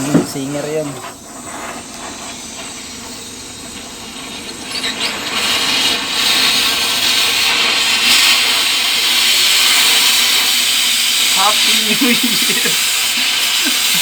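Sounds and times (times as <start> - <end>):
angle grinder grinding metal: 3.1 - 14.0.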